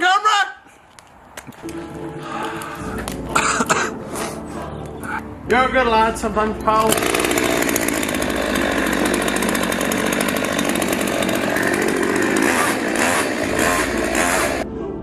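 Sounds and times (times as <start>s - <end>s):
chainsaw cutting: 6.8s - 14.6s.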